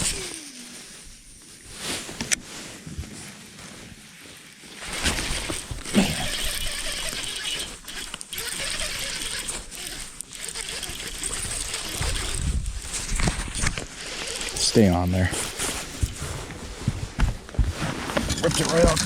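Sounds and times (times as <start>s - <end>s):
fishing reel clicking and whirring: 0.0s - 0.6s, 5.0s - 15.2s.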